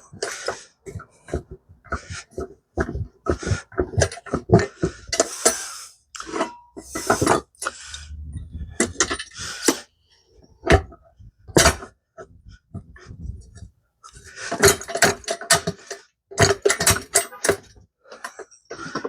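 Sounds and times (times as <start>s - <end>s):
metal clanks and knocks: 16.4s - 17.7s.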